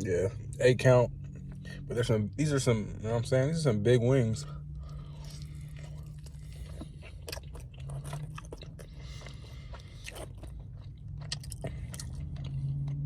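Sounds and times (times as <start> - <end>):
low hum: 0.0 - 13.0
person chewing food: 4.6 - 13.0.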